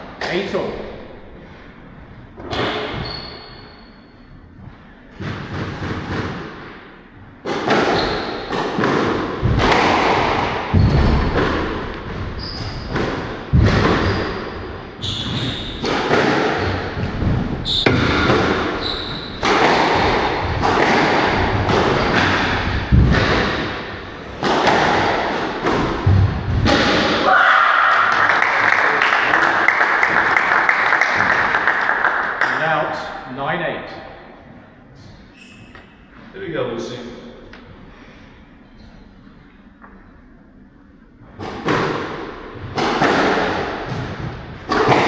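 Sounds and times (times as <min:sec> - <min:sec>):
shoe squeaks: 0:02.8 - 0:04.4, 0:07.9 - 0:08.5, 0:12.4 - 0:12.9, 0:14.0 - 0:15.9, 0:17.6 - 0:17.9, 0:18.8 - 0:19.4, 0:35.2 - 0:36.1
racquets striking ball: 0:07.4 - 0:27.2, 0:41.4 - 0:45.0
crowd applauding: 0:27.8 - 0:33.0.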